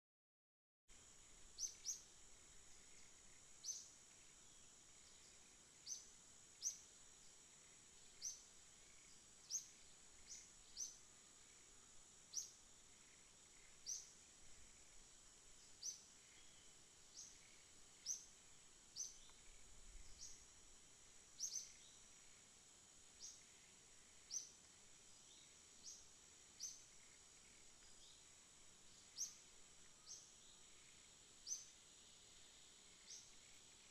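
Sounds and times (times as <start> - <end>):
high-pitched insect drone: 1.0 - 33.9
bird chirping: 1.4 - 20.5, 21.3 - 22.4, 23.2 - 24.6, 25.2 - 33.9.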